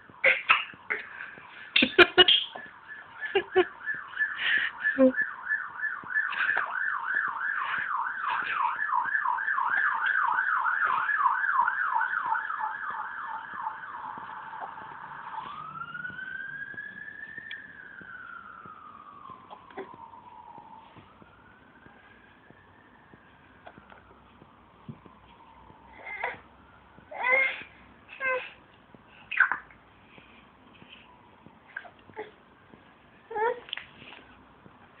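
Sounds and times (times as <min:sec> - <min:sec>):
electronic siren yelping and wailing: 0:02.2 - 0:24.2.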